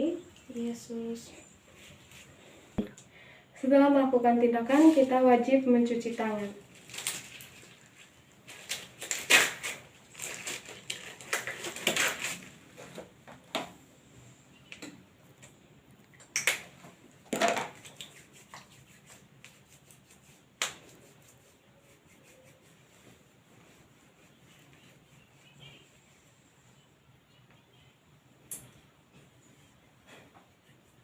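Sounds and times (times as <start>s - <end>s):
hands rubbing and rustling: 17.7s - 26.3s.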